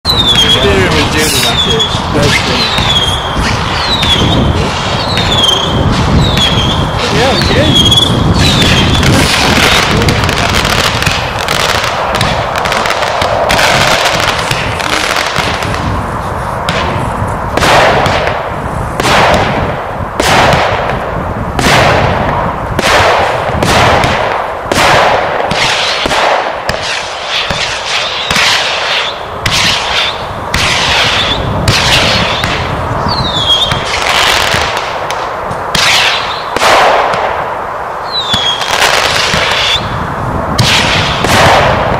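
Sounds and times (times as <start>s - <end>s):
descending firework whistle: 0.0s - 18.4s, 25.4s - 34.8s, 35.7s - 37.2s, 38.0s - 41.9s
firework bangs with crackle: 0.1s - 41.9s.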